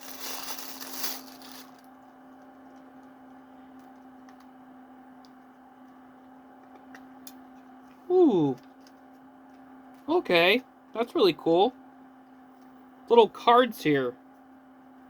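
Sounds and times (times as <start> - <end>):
plastic packaging crinkling: 0.0 - 1.9
faint steady hum: 0.0 - 15.0.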